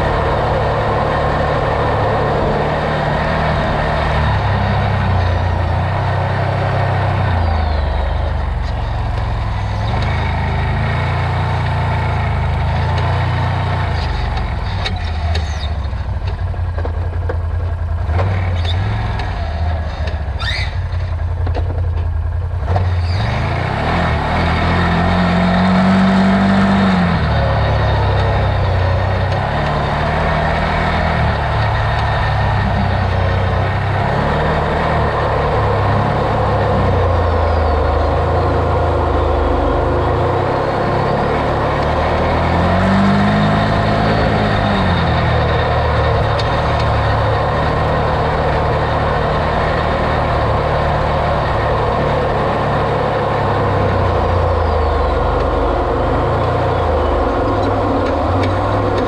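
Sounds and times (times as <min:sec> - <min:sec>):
off-road vehicle engine revving: 0:00.0 - 0:59.0
brief high squeaks: 0:20.4 - 0:21.0.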